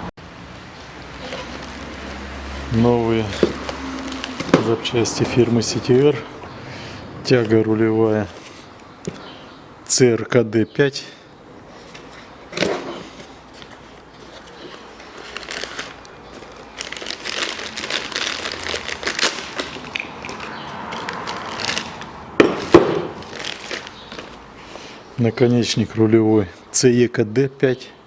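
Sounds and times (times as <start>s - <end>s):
packaging crinkling and rustling: 1.1s - 5.6s, 12.6s - 24.4s
knocks: 22.4s - 23.2s.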